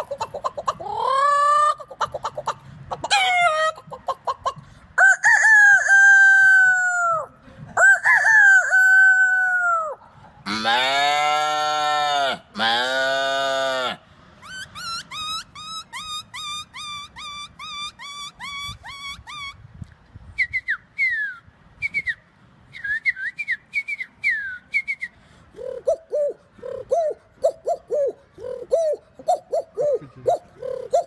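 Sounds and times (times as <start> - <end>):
man imitating animal calls: 0.0 - 4.4, 25.6 - 31.0
whistled bird-like calls: 14.4 - 19.6.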